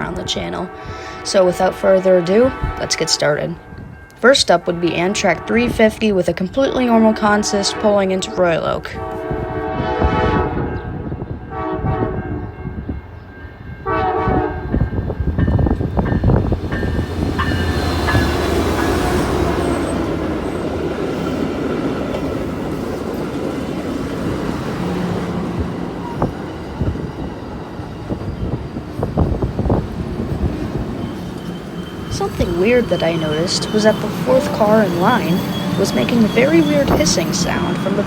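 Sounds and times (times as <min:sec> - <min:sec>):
train horn blasts: 0:00.0 - 0:04.0, 0:04.6 - 0:06.1, 0:06.9 - 0:12.9, 0:13.8 - 0:15.0, 0:31.0 - 0:38.0
locomotive rumble: 0:00.0 - 0:38.0
wheels clattering on rails: 0:14.8 - 0:38.0.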